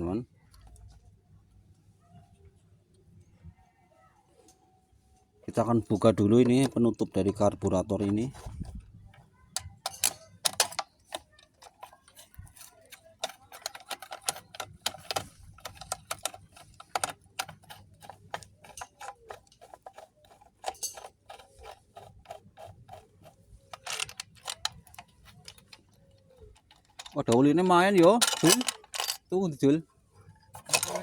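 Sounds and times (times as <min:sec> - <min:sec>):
metallic clicks of hand tools: 0:09.6 - 0:29.2.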